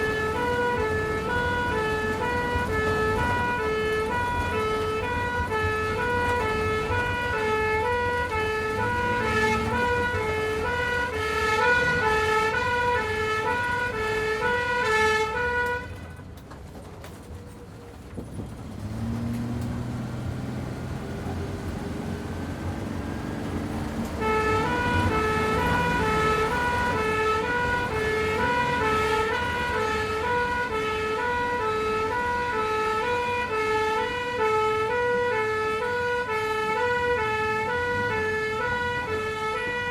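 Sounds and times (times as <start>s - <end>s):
ambulance two-tone siren: 0.0s - 16.1s, 18.9s - 39.9s
vehicle engine running: 16.7s - 28.9s.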